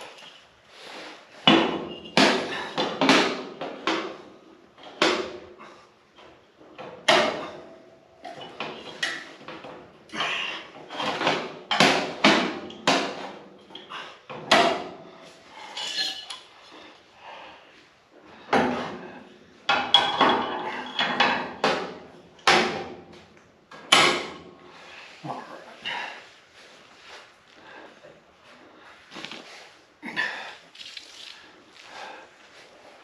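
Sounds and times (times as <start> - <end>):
metallic clanks and taps: 19.7 - 24.4.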